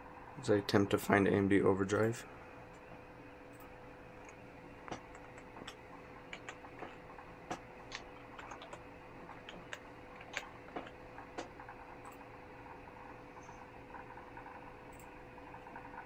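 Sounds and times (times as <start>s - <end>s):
faint steady hum: 0.0s - 16.0s
mouse and keyboard clicking: 4.9s - 12.2s.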